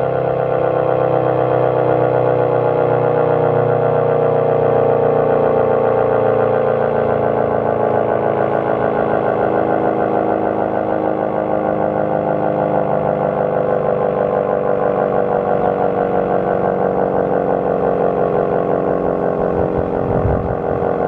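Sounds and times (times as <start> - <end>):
outdoor warning siren steady tone: 0.0 - 21.0
low rumble: 19.5 - 21.0.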